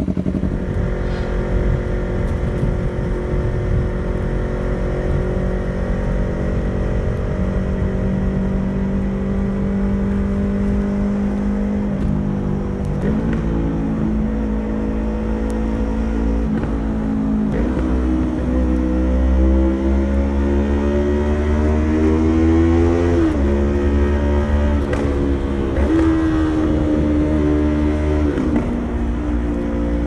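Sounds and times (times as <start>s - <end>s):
motorcycle engine running: 0.0s - 5.7s.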